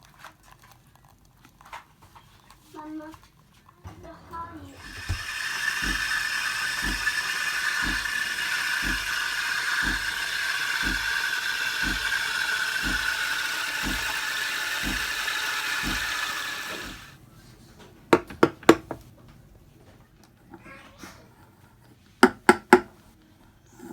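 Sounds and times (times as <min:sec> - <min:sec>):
low pump thump: 0:03.9 - 0:17.1
espresso machine hissing: 0:04.4 - 0:17.2
sharp clicks: 0:04.8 - 0:17.1.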